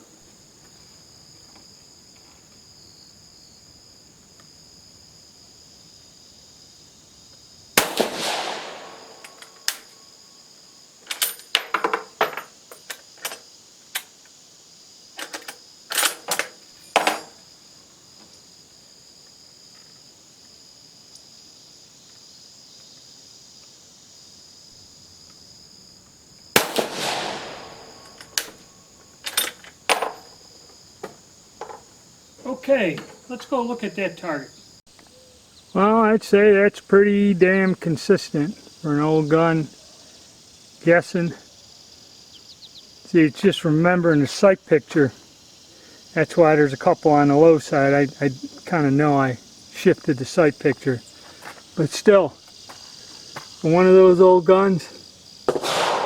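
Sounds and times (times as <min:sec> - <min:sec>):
crickets chirping: 0:00.0 - 0:56.0
rifle shots: 0:07.8 - 0:09.9, 0:26.6 - 0:28.6, 0:55.5 - 0:56.0.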